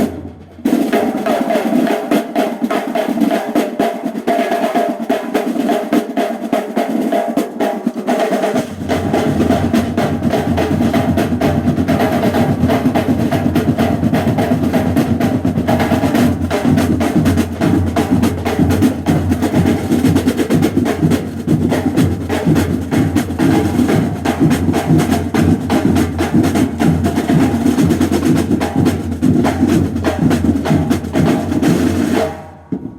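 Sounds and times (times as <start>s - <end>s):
snare drum rolls: 0.0s - 32.9s
bass drums: 8.6s - 32.9s.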